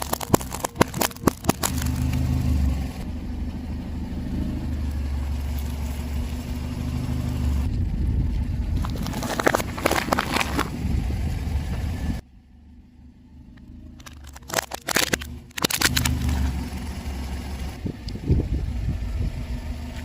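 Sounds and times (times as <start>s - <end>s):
object crushed under tyre: 0.0s - 2.4s, 8.7s - 10.8s, 14.0s - 16.5s
car rolling slowly: 0.0s - 20.0s.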